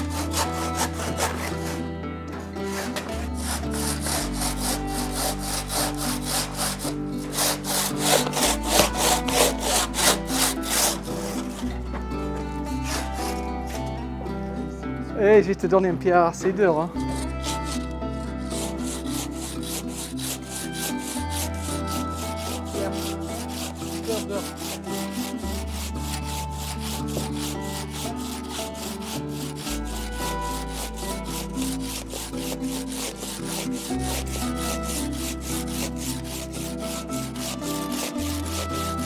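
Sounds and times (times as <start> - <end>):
handsaw rasping through stone: 0.0 - 13.9, 17.0 - 39.0
background music with bass line: 0.0 - 39.0.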